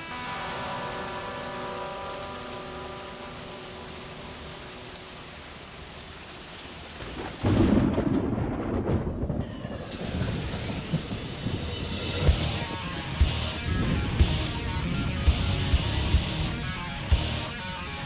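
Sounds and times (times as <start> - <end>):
steady rain hiss: 0.0 - 18.0
thunder clap and rumble: 7.0 - 17.3.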